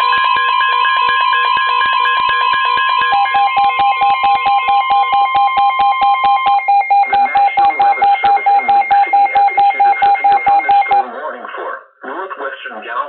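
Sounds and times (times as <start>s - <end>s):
pulsing radio alert beeps: 1.6s - 11.0s
weather radio warning tone: 3.2s - 11.1s
faint broadcast voice: 7.0s - 13.0s.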